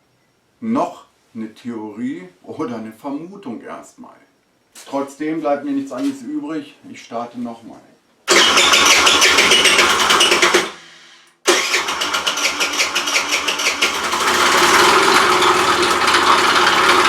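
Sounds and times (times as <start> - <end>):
engine rattling: 8.3 - 10.8, 11.5 - 17.0
scooter engine cranking: 8.3 - 10.8, 11.5 - 17.0.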